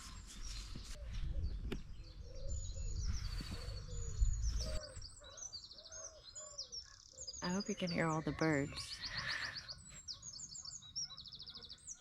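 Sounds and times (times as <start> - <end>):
wind rumble on microphone: 0.0 - 5.2
songbirds singing and chirping: 0.0 - 12.0.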